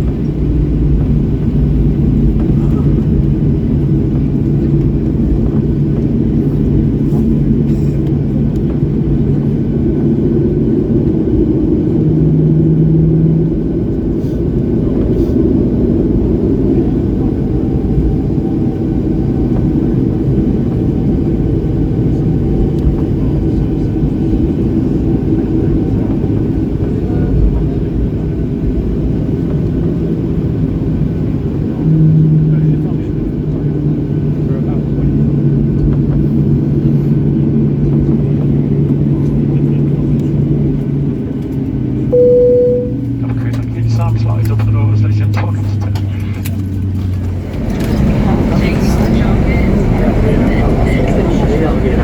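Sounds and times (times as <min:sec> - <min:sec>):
aircraft engines idling: 0:00.0 - 0:31.8, 0:32.5 - 0:52.0
low hum: 0:42.2 - 0:43.9.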